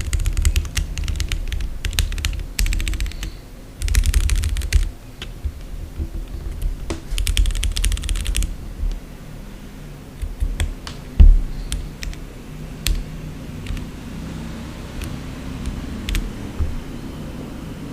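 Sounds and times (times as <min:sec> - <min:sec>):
mechanical keyboard typing: 0:00.0 - 0:09.0, 0:10.2 - 0:13.9, 0:14.9 - 0:16.9
heavy low thud: 0:11.0 - 0:11.6, 0:16.5 - 0:17.0.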